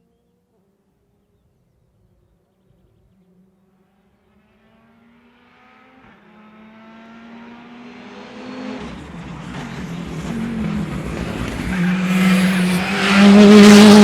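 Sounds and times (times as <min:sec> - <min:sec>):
rally car engine accelerating: 0:04.4 - 0:14.0.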